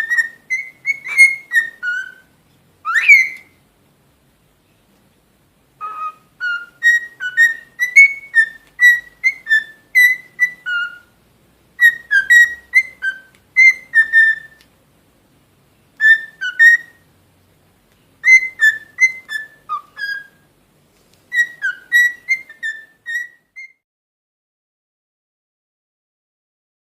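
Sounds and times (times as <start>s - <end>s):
cockatiel whistling a tune: 0.0s - 3.6s, 5.8s - 11.2s, 11.8s - 14.6s, 16.0s - 17.0s, 18.2s - 20.5s, 21.3s - 23.8s.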